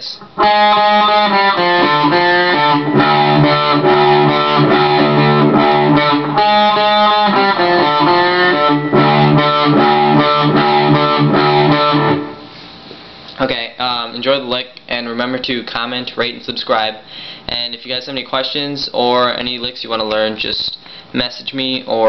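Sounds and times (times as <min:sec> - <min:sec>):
distorted electric guitar lick: 0:00.0 - 0:12.8.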